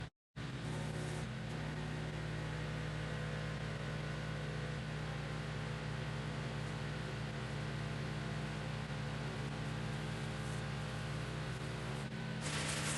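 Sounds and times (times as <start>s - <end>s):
pressure washer hum: 12.4s - 12.9s
water jet hissing: 12.4s - 12.9s.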